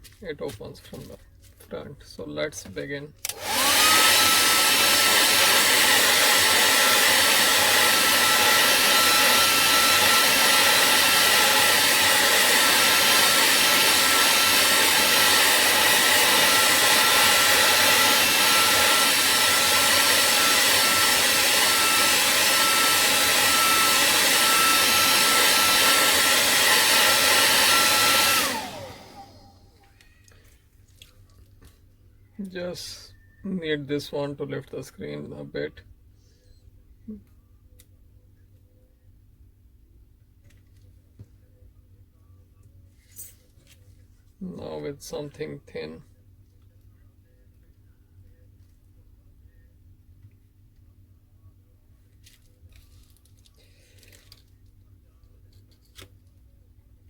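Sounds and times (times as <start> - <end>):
hot-air blower whining: 3.2 - 30.1.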